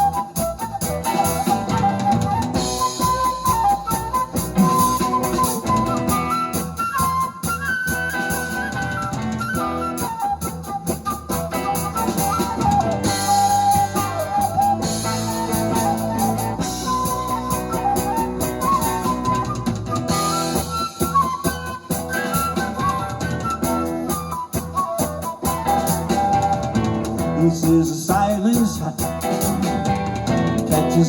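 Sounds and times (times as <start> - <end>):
flute melody: 0.0 - 31.0
rock band playing: 0.0 - 31.0.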